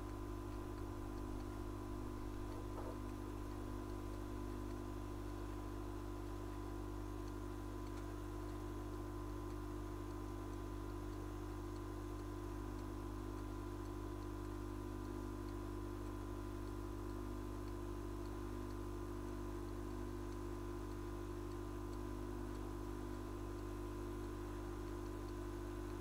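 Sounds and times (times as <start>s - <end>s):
electrical hum: 0.0s - 26.0s
faint regular ticking: 0.0s - 26.0s.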